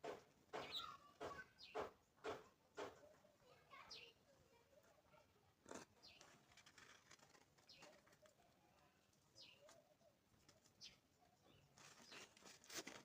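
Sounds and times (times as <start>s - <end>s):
bird chirps: 0.5s - 1.0s, 9.4s - 9.8s
handling rustling and tapping: 11.6s - 13.0s.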